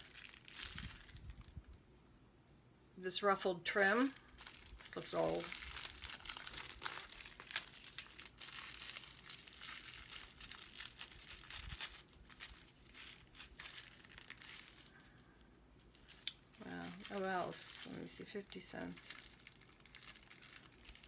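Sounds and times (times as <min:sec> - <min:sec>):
plastic packaging crinkling: 0:00.0 - 0:01.8, 0:03.7 - 0:21.0.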